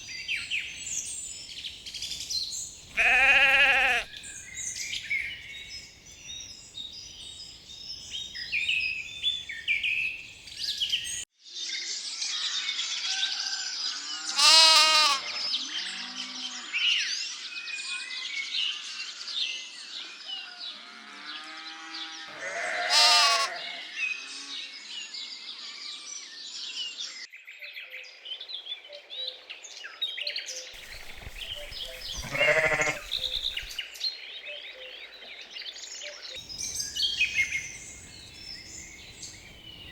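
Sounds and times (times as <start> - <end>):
songbirds chirping: 0.0 - 11.2, 30.2 - 39.9
sheep bleating: 2.9 - 5.0, 14.3 - 16.4, 22.3 - 23.9, 30.8 - 33.8.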